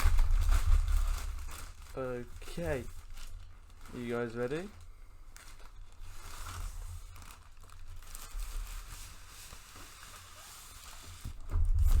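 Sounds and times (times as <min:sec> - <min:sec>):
packaging rustling and crinkling: 0:00.0 - 0:12.0
packaging tearing: 0:05.4 - 0:12.0.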